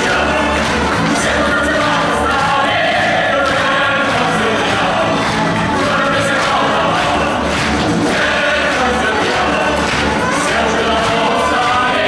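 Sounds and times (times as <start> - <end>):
audience applause: 0.0 - 12.0
cast and chorus singing: 0.0 - 12.0.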